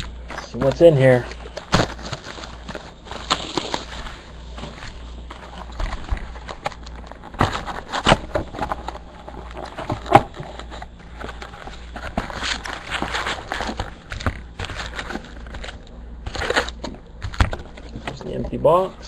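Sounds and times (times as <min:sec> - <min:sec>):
cardboard box rustling and knocking: 0:00.6 - 0:04.0, 0:04.6 - 0:15.7.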